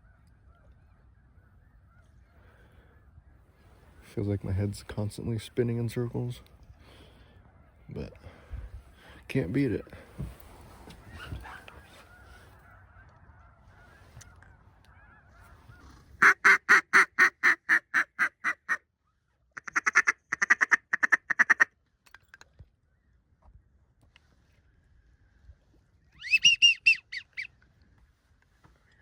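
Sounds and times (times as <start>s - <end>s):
ducks quacking: 11.2s - 18.8s, 19.6s - 21.7s
fast chattering calls: 26.2s - 27.5s.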